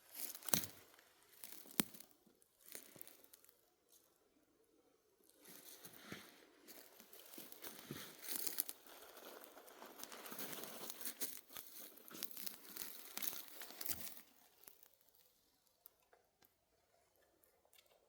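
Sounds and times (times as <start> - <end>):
close rustling and crackling: 5.5 - 14.9.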